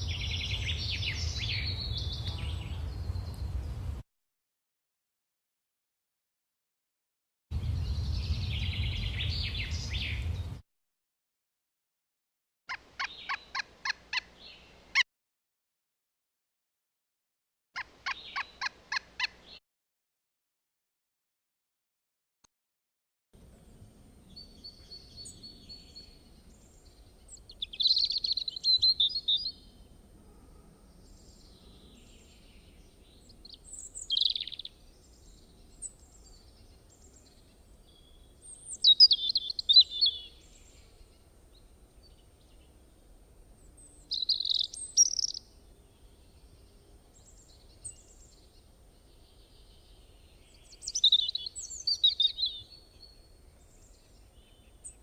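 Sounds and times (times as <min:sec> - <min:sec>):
songbird warbling: 0:12.7 - 0:15.0, 0:17.8 - 0:19.6, 0:24.3 - 0:29.7, 0:33.2 - 0:41.2, 0:43.8 - 0:46.2, 0:49.2 - 0:53.2
faint background hiss: 0:23.4 - 0:55.0.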